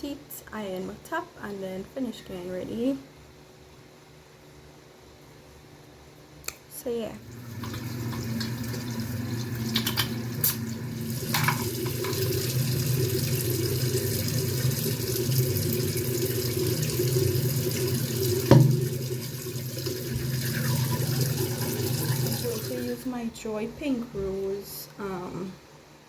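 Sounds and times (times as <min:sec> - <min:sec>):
tap running into sink: 0:07.5 - 0:22.9
sharp knock: 0:18.5 - 0:18.9.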